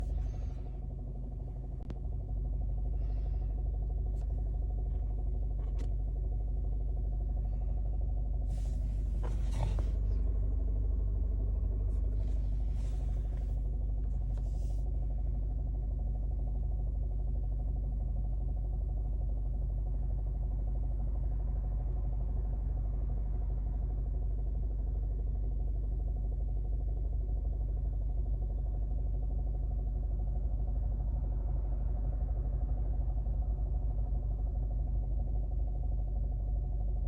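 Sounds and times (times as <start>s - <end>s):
car engine idling inside cabin: 0.0s - 37.0s.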